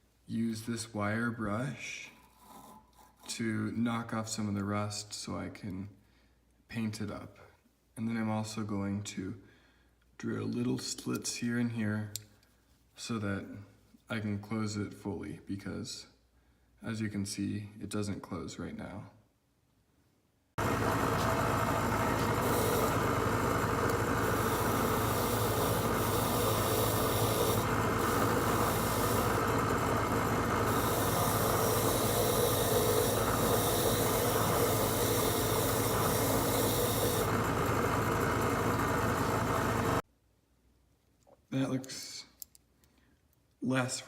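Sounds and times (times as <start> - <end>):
motor hum: 20.6 - 40.0
wire brush scrubbing metal: 20.8 - 37.4.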